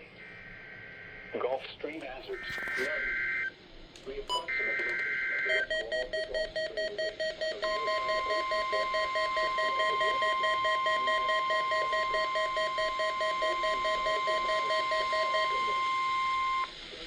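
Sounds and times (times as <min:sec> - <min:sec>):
fast-pulsing alarm beep: 0:04.3 - 0:16.7.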